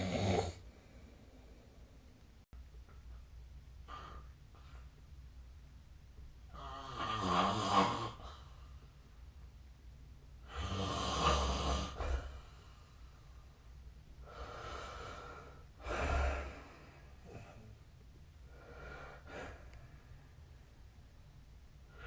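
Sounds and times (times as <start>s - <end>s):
person snoring: 0.0s - 0.6s, 6.5s - 8.4s, 10.5s - 12.4s
soft breath: 0.6s - 2.2s, 11.9s - 20.8s.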